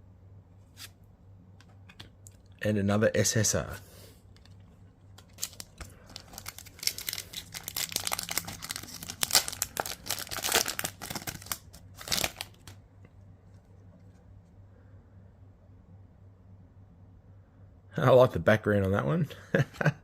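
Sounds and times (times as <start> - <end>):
foil wrapper crinkling and tearing: 5.2 - 12.8.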